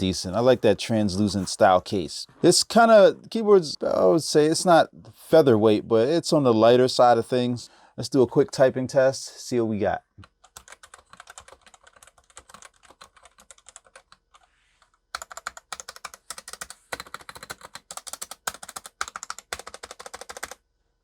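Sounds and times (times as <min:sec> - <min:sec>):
soft keyboard typing: 0:10.2 - 0:20.6.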